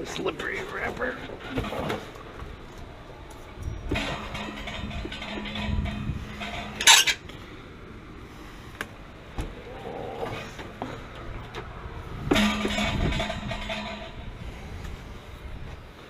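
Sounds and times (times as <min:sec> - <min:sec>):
metal clattering: 0:03.4 - 0:07.2, 0:12.2 - 0:14.4.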